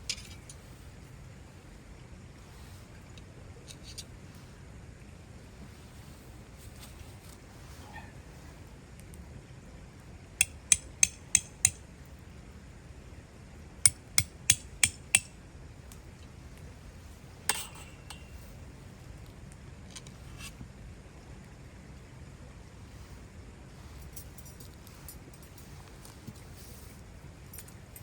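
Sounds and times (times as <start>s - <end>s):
hammer striking metal: 10.4s - 11.8s, 13.9s - 15.3s, 17.5s - 18.5s.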